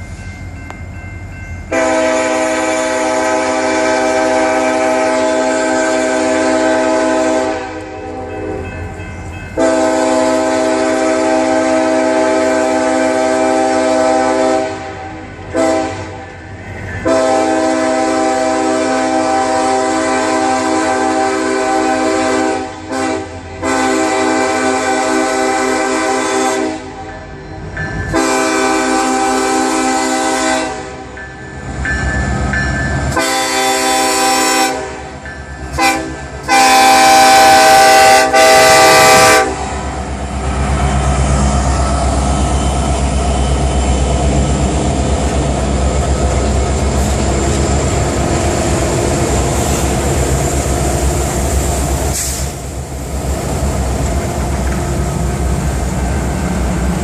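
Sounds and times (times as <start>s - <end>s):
diesel locomotive rumble: 0.0s - 57.0s
train wheels on rails: 0.0s - 57.0s
locomotive air horn blasts: 1.7s - 8.7s, 9.6s - 16.3s, 17.0s - 27.0s, 28.1s - 31.2s, 33.1s - 40.0s.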